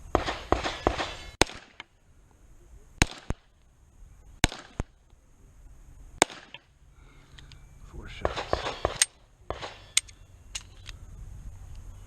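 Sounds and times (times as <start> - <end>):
pistol shots: 0.1 - 1.9, 3.0 - 3.5, 4.4 - 5.0, 6.2 - 6.6, 8.2 - 10.1
sharp gunshot cracks: 0.1 - 1.9, 3.0 - 3.5, 4.4 - 4.9, 6.2 - 6.7, 8.2 - 10.0.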